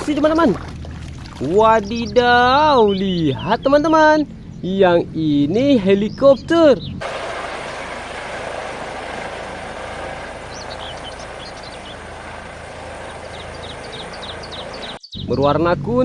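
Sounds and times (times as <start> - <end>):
small bird chirping: 1.0 - 7.0, 10.3 - 15.5
steady rushing noise: 7.0 - 15.0.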